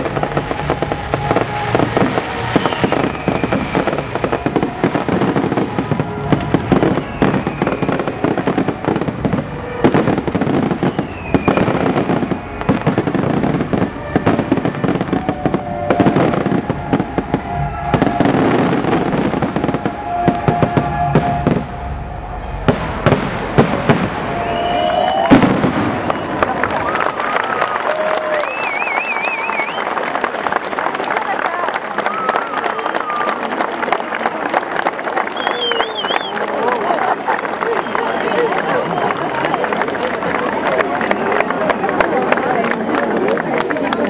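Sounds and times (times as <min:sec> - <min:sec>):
falling firework whistle: 0:00.0 - 0:30.0, 0:35.2 - 0:36.4
fireworks bangs and crackling: 0:00.0 - 0:30.8.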